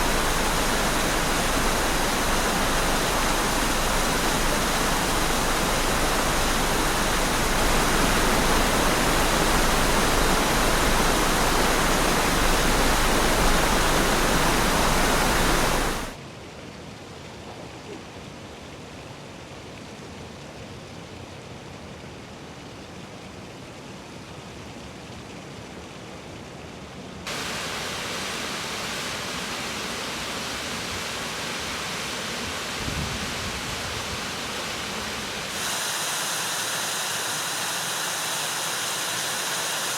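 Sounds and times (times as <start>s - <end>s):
waterfall rushing: 0.0s - 16.2s, 27.3s - 39.9s.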